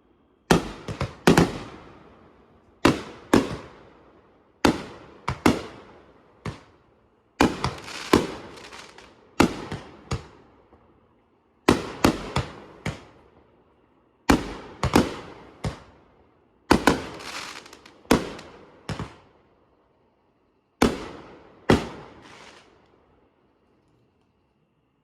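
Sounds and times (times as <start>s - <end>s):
fireworks bursting: 0.5s - 2.1s, 2.8s - 3.9s, 7.4s - 10.4s, 11.7s - 13.2s, 16.7s - 19.2s, 20.8s - 22.9s.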